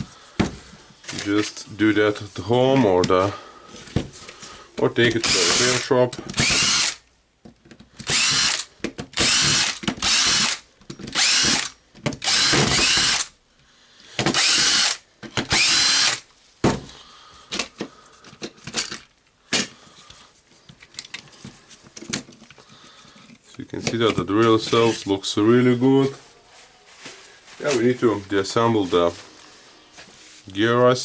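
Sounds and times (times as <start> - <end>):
parts being handled: 0.0 - 30.7
cordless drill whirring: 5.2 - 7.0, 8.0 - 13.3, 14.3 - 16.2.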